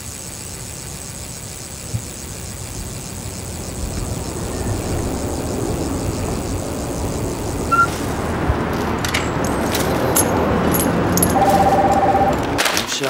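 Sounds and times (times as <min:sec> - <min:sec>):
vehicle traffic rumble: 0:01.9 - 0:12.6
short high beep: 0:07.7 - 0:08.0, 0:11.4 - 0:12.4.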